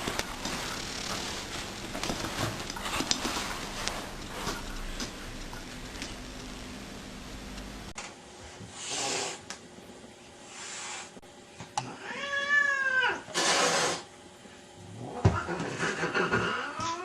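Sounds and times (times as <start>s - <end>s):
cat hissing: 8.7s - 9.4s, 10.5s - 11.2s, 12.0s - 14.1s
cat meowing: 12.0s - 13.2s.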